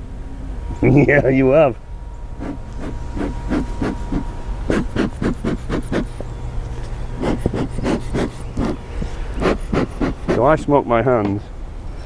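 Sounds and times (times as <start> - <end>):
steady low hum: 0.0 - 12.0
bellows puffing whooshes: 2.4 - 6.3, 7.0 - 10.7.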